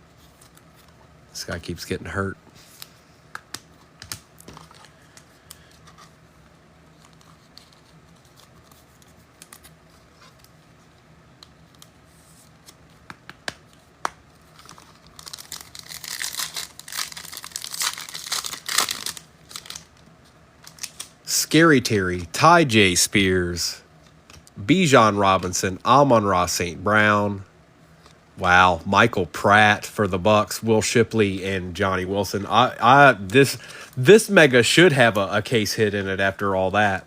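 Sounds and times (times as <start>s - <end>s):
card pack wrapper tearing: 14.5s - 20.0s, 20.6s - 21.2s.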